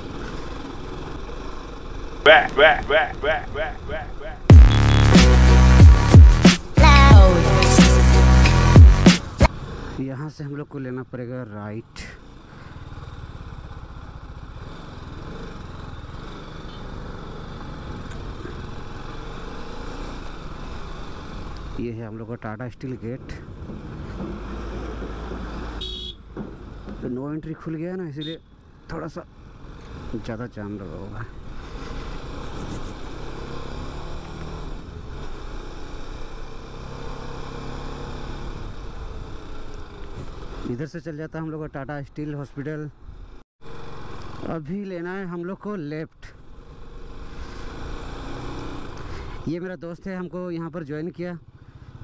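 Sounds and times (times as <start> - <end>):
motorcycle engine running: 0.0 - 9.7
motorcycle engine running steadily: 12.2 - 19.4, 51.4 - 52.0.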